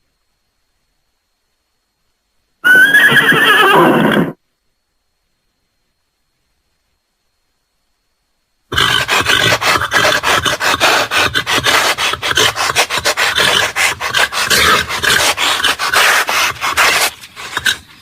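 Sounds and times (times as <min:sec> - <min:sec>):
rapid rasping scrapes: 0:08.7 - 0:18.0.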